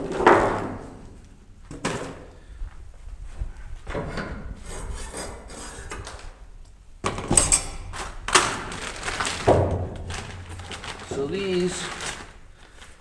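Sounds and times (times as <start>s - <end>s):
handling noise: 7.0s - 13.0s.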